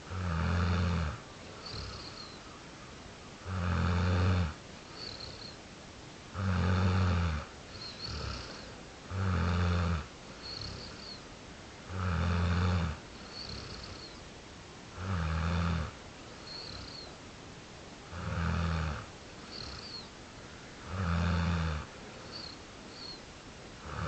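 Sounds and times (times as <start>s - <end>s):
deep snoring: 0.1s - 2.4s, 3.4s - 5.5s, 6.3s - 11.2s, 11.9s - 14.2s, 15.0s - 17.1s, 18.1s - 20.1s, 20.8s - 22.6s, 23.8s - 24.0s
faint whistling breath: 1.6s - 2.6s, 4.9s - 5.6s, 7.7s - 8.8s, 10.4s - 11.2s, 13.2s - 14.2s, 16.4s - 17.2s, 19.4s - 20.7s, 22.2s - 23.3s.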